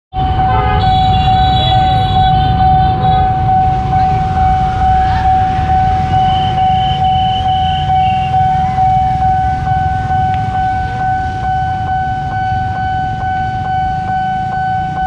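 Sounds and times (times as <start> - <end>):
level crossing alarm tone: 0.1 - 15.0
low rumble of vehicles: 0.2 - 15.0.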